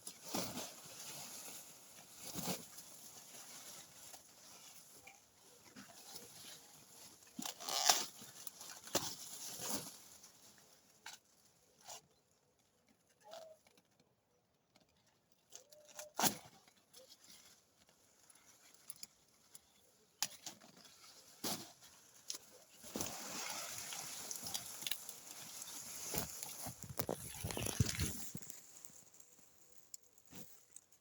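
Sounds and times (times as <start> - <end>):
rustling: 15.8 - 31.0.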